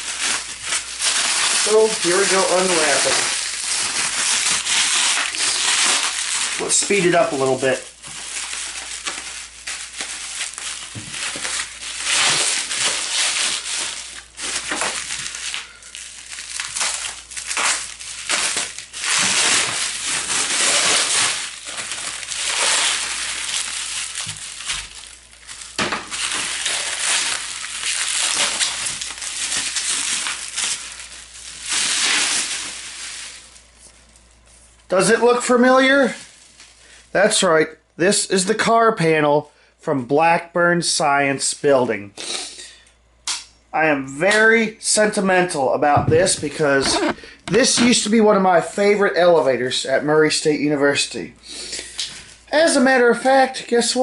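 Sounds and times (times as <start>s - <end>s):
bubble wrap crinkling: 0.0s - 37.1s, 46.2s - 48.2s, 51.8s - 54.0s.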